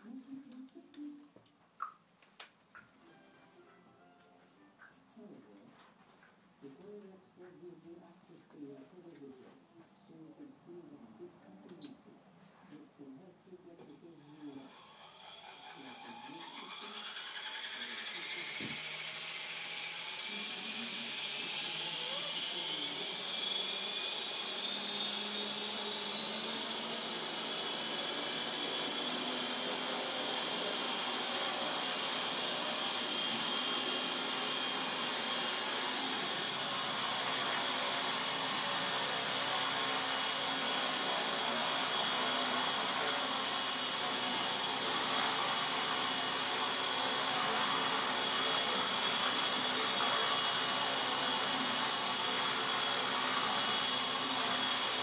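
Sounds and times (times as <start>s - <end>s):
rc helicopter whining: 13.9s - 55.0s.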